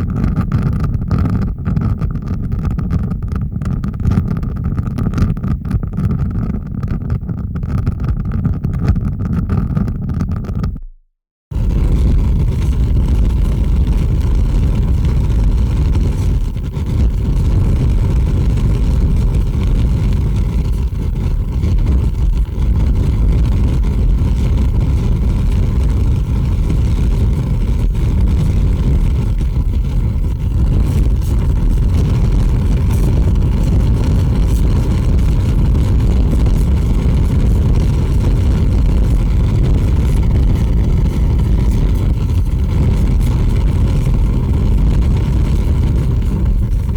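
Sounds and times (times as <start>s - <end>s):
fire crackles: 11.5s - 46.9s
large fire rumbling: 11.5s - 46.9s.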